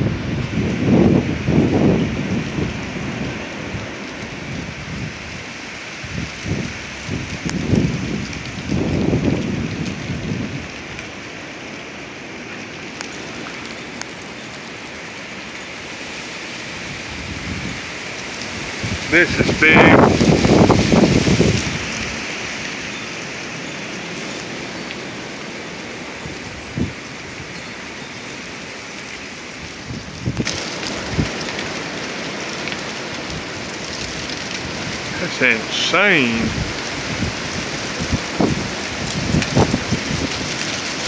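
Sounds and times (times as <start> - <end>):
strong wind rushing: 0.0 - 10.7, 18.5 - 22.6, 34.6 - 40.5.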